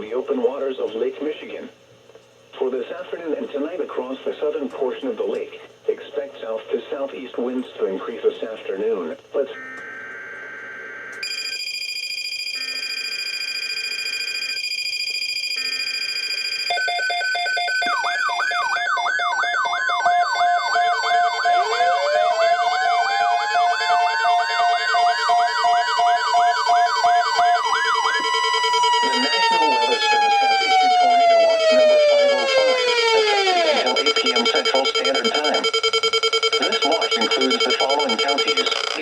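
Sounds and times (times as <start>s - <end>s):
steady multi-tone alert: 9.5s - 39.0s
fast yelping siren: 9.6s - 39.0s
pulsing siren tones: 9.6s - 39.0s
siren winding up in pitch: 9.6s - 39.0s.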